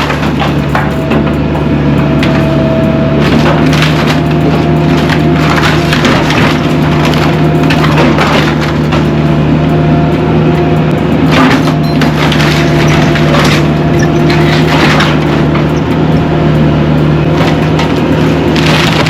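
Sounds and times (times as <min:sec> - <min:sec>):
wood cracking and splintering: 0:00.0 - 0:01.5, 0:02.2 - 0:09.2, 0:11.3 - 0:19.0
excavator diesel engine running: 0:00.0 - 0:19.0.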